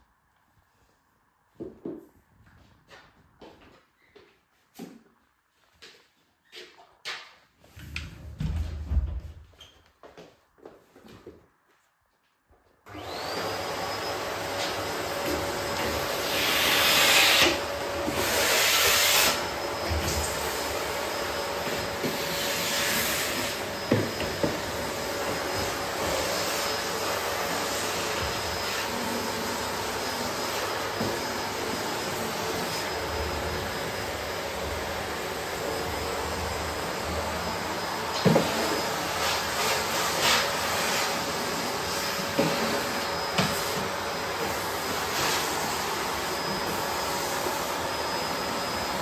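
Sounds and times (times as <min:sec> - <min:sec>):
vacuum cleaner running: 0:12.9 - 0:49.0.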